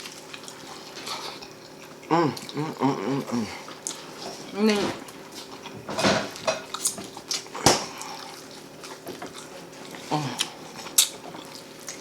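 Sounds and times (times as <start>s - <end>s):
plates and utensils clinking: 5.7s - 7.1s.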